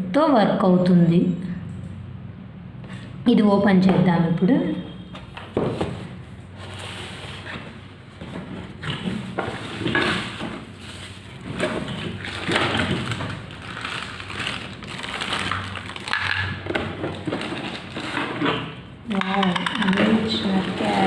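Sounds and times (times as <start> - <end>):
rustling and crinkling packaging: 5.6 - 18.8, 19.9 - 21.0.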